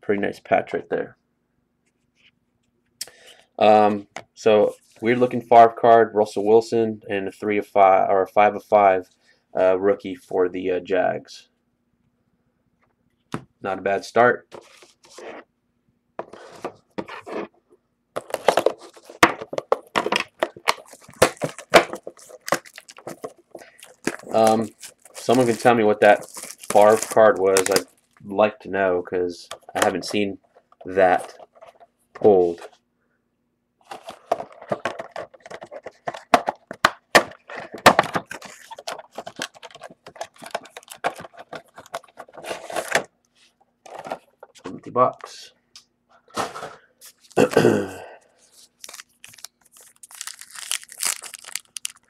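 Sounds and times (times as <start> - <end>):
card packaging rustling: 18.2 - 28.2, 33.8 - 43.1, 48.5 - 52.0.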